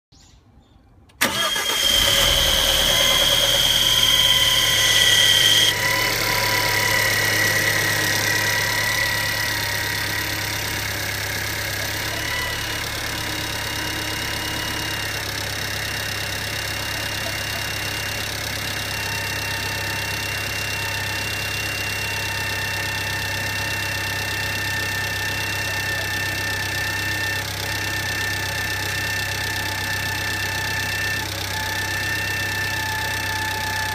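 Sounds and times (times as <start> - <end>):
car engine starting and idling: 1.0 - 33.9
high-pitched engine whine: 1.2 - 15.3.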